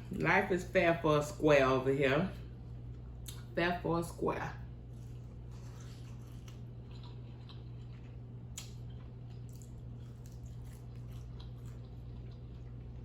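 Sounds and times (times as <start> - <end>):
person chewing food: 4.9 - 13.0.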